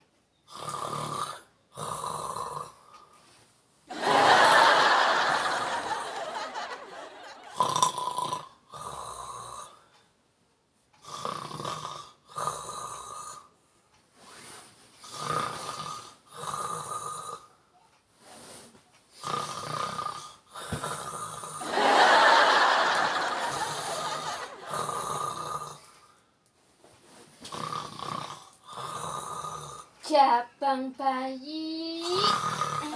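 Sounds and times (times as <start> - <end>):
man snoring: 0.5 - 2.9, 4.4 - 9.9, 11.0 - 13.5, 15.0 - 17.5, 19.2 - 26.2, 27.5 - 29.9, 32.0 - 32.9.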